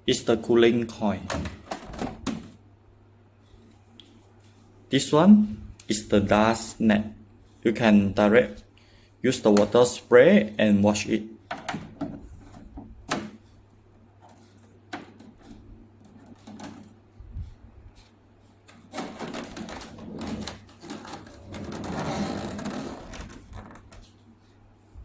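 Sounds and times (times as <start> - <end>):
steady low hum: 0.0 - 25.0
scraping or rustling: 18.8 - 24.2.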